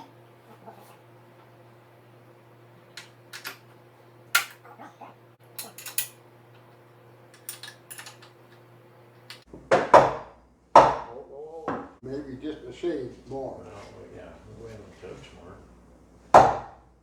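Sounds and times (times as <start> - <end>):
metal tools clinking and knocking: 3.0 - 3.7, 4.4 - 4.6, 5.5 - 6.2, 7.3 - 8.6, 9.2 - 9.4.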